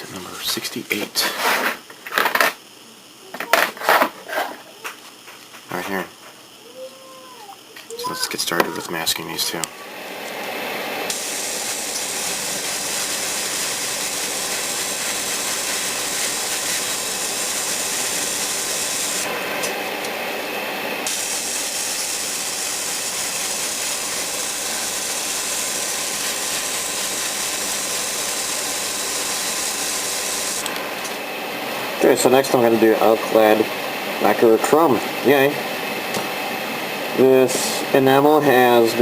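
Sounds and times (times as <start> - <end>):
air compressor hum: 7.6 - 38.9
airbrush spraying hiss: 11.1 - 19.4, 21.0 - 30.7.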